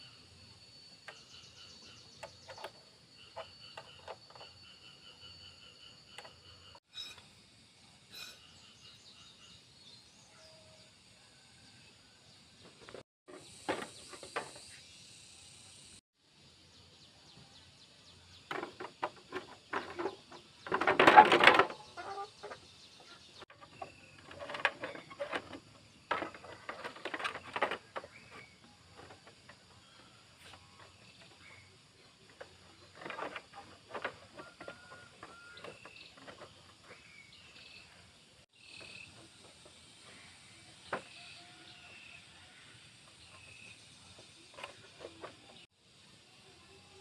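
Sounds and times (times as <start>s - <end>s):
clinks and clatter of tools: 18.5s - 22.6s.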